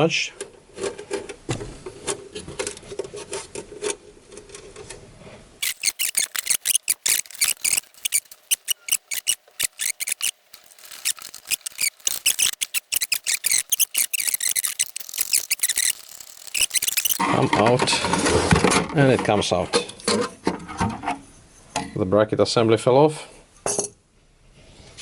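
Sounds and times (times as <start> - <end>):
tools scraping metal case: 5.6 - 17.2.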